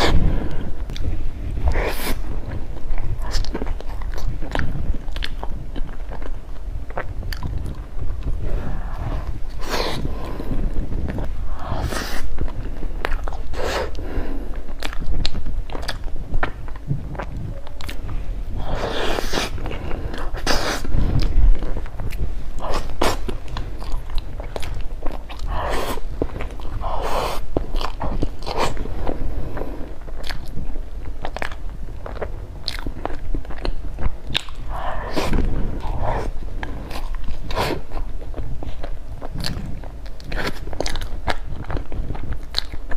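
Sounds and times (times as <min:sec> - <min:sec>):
person chewing: 0:00.0 - 0:42.9
wet mouth clicks: 0:03.3 - 0:05.9.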